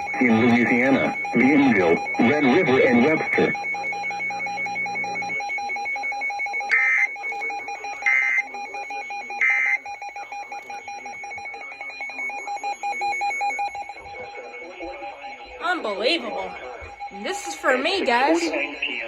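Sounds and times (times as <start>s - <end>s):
warbling digital data bursts: 0.0s - 5.9s
steady high electronic tone: 0.0s - 6.6s.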